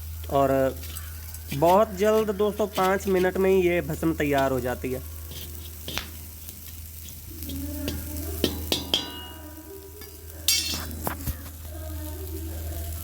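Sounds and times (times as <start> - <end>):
sizzling and crackling in pan: 0.0 - 13.0.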